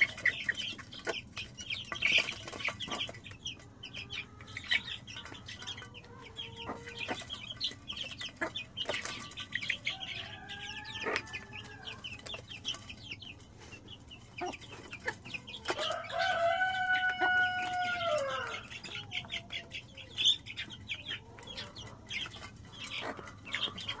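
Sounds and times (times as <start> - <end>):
chicken clucking: 0.0 - 24.0
chicks peeping: 0.0 - 24.0.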